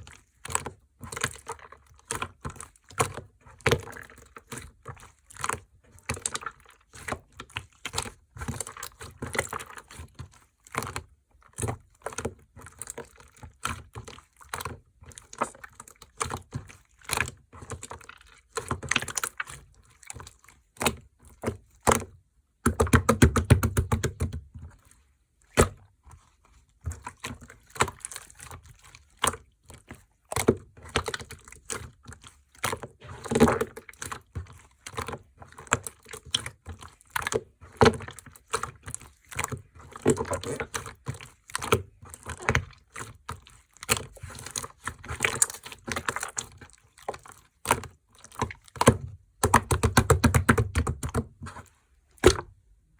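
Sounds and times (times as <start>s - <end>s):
slime squishing and clicking: 0.3s - 26.0s, 26.8s - 52.6s.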